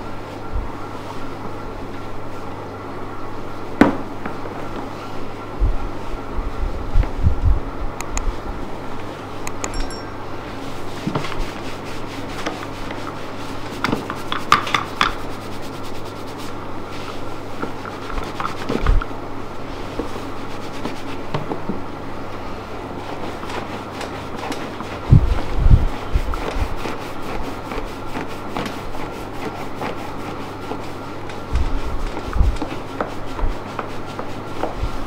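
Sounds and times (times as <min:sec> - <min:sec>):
steady low hum: 0:00.0 - 0:35.0
hands rubbing over skin: 0:10.6 - 0:18.9, 0:19.7 - 0:21.3, 0:23.0 - 0:35.0.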